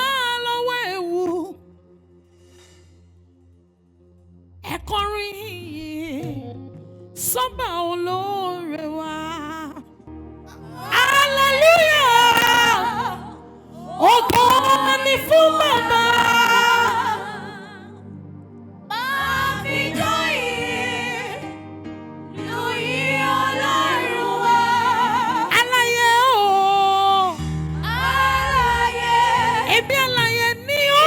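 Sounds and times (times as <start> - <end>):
person singing gospel: 0.0 - 1.6, 4.7 - 6.6, 7.2 - 9.9, 10.5 - 18.0, 18.9 - 31.0
low bass accompaniment: 4.5 - 13.5, 27.4 - 30.6.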